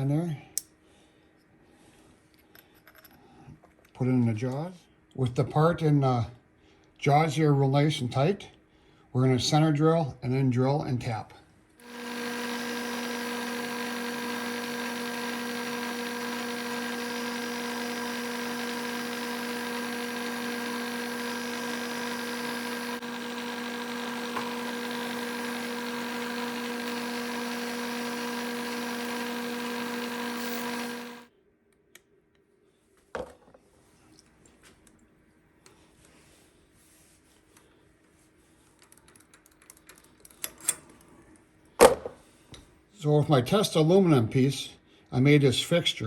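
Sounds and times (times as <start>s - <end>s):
milling machine humming: 11.8s - 31.3s.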